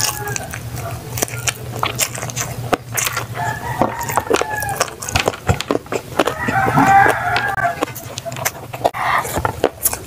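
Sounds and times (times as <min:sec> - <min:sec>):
rooster crowing: 0:00.0 - 0:01.0, 0:03.4 - 0:05.1, 0:06.2 - 0:08.1
chewing and lip smacks: 0:00.0 - 0:10.0.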